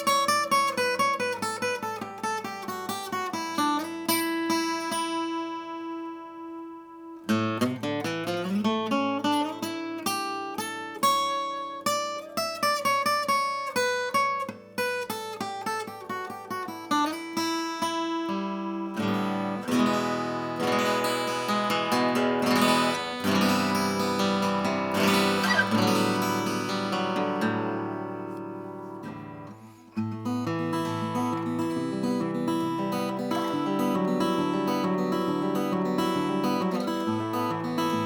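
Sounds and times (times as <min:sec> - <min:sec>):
acoustic guitar playing: 0:00.0 - 0:38.0.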